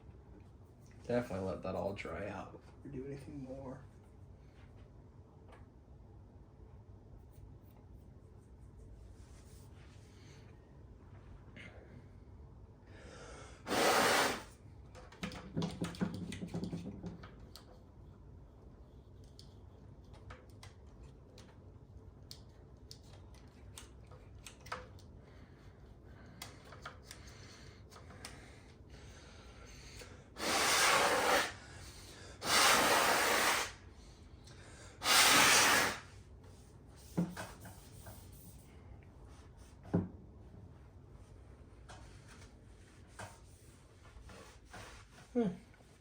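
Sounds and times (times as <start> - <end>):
aerosol can spraying: 13.7 - 14.5, 30.4 - 31.6, 32.4 - 33.8, 35.0 - 36.1.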